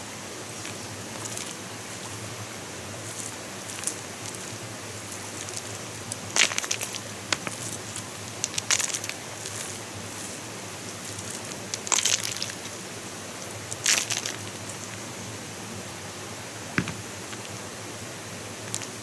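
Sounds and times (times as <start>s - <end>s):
steady hiss: 0.0s - 19.0s
crackling crunching clicks: 18.7s - 19.0s.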